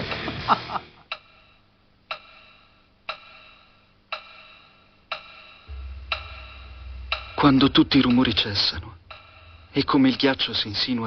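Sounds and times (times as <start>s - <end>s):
low hum: 5.7s - 11.0s.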